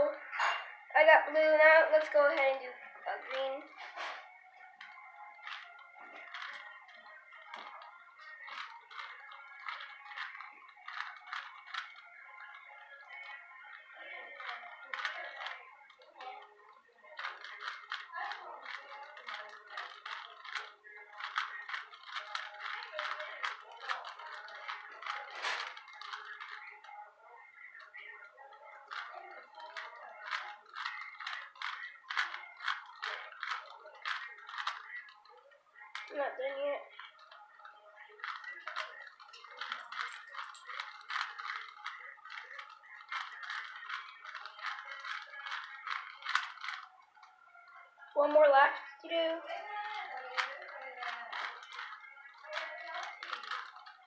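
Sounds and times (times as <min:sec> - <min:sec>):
puzzle cube clicking and rattling: 0:04.8 - 0:27.0, 0:28.6 - 0:36.2, 0:38.1 - 0:47.0, 0:49.5 - 0:54.0.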